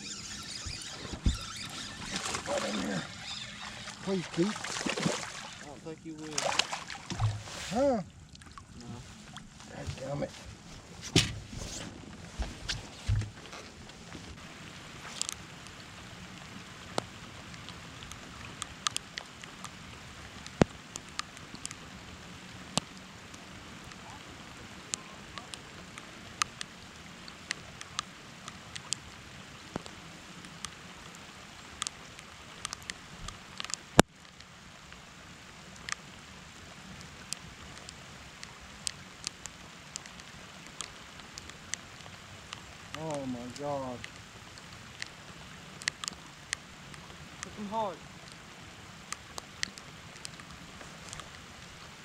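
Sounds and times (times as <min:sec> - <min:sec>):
raindrops ticking close by: 0:00.0 - 0:11.4, 0:12.0 - 0:52.0
rain hiss: 0:00.0 - 0:52.0.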